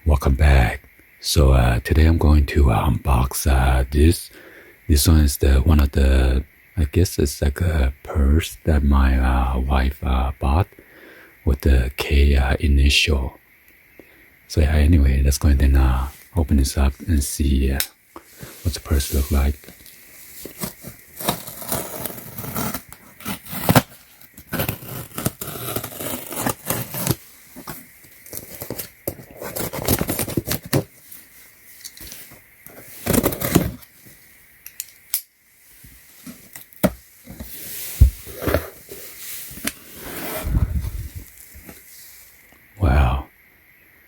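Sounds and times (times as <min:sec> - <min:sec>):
packaging tearing and crinkling: 0:20.4 - 0:27.2, 0:28.2 - 0:30.9, 0:33.0 - 0:33.8.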